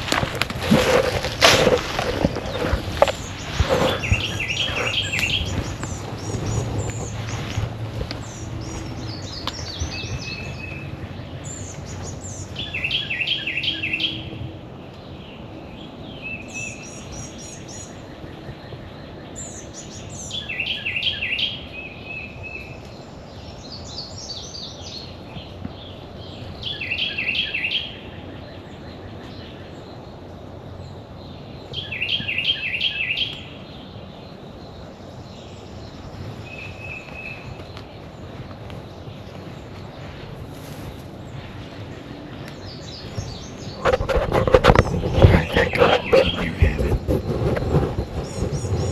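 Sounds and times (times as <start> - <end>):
high bird calls: 0.0 - 14.3, 35.5 - 48.9
songbird trilling: 1.8 - 14.3.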